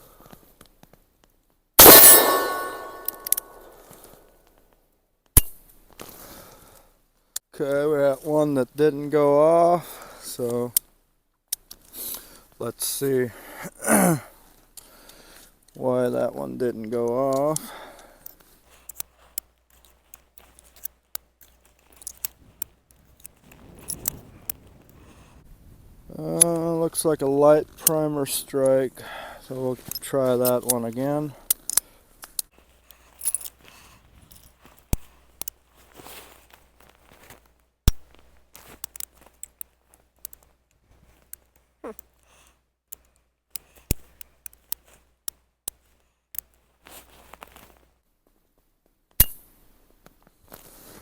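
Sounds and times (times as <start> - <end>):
revolver gunshot: 1.8 - 3.8
sharp snap: 1.8 - 4.0.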